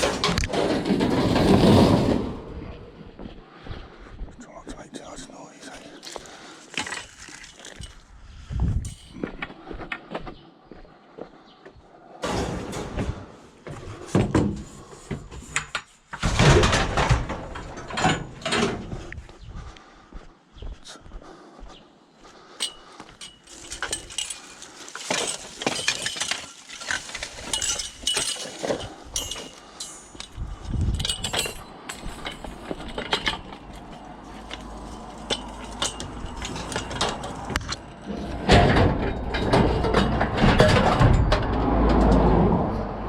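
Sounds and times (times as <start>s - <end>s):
scrap metal clanking: 0.0s - 2.6s, 12.2s - 18.9s, 22.6s - 42.4s
metal scraping: 22.6s - 42.6s.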